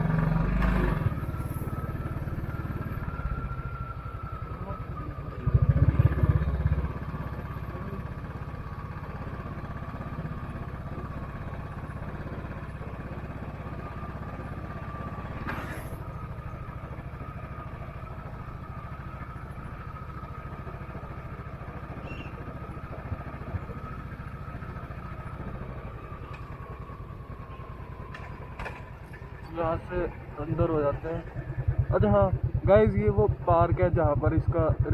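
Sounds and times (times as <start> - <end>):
motorcycle engine running: 0.0 - 34.9.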